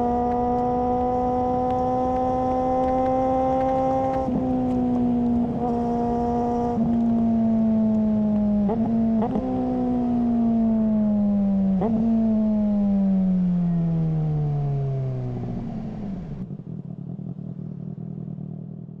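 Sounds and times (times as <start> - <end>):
motorcycle engine slowing: 0.0 - 19.0
motorcycle throttle blips: 0.0 - 19.0
motorcycle engine rough idle: 16.5 - 19.0.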